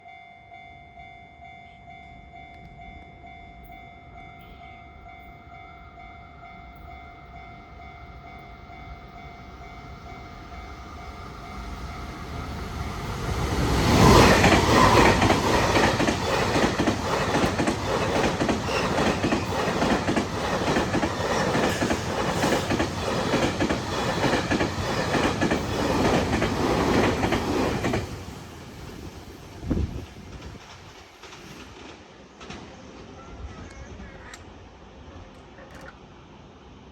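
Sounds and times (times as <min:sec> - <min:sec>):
level crossing warning bell: 0:00.0 - 0:13.2
train wheels clattering over rail joints: 0:13.6 - 0:28.4, 0:29.8 - 0:33.7.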